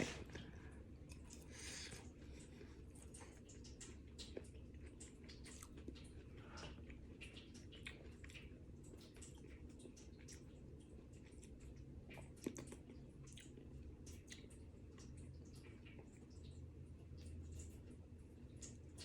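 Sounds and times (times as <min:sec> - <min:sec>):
faint chewing: 0:00.0 - 0:19.0
low room hum: 0:00.0 - 0:19.0.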